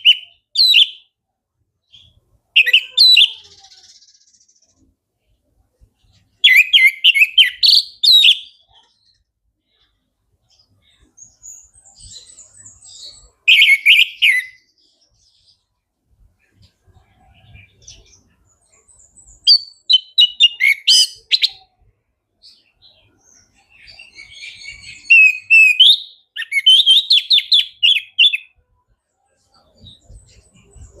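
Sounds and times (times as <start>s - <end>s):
thrush singing whistled notes: 0.0s - 1.1s, 6.4s - 8.5s, 11.0s - 14.7s, 19.0s - 21.6s, 23.7s - 28.6s.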